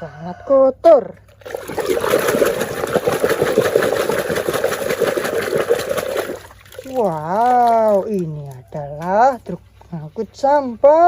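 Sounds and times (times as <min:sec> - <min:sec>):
rapid fluttering rushing noise: 0:01.6 - 0:06.5.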